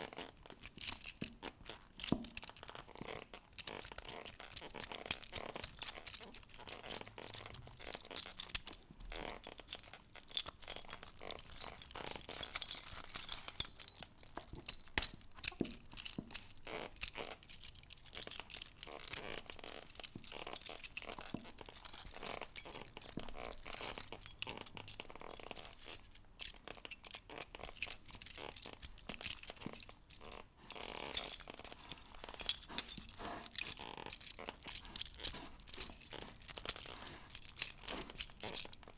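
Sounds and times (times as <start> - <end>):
leather creaks: 2.5 - 26.0, 26.6 - 38.9
keys in door lock: 3.6 - 38.9
keys jangling: 9.7 - 38.9.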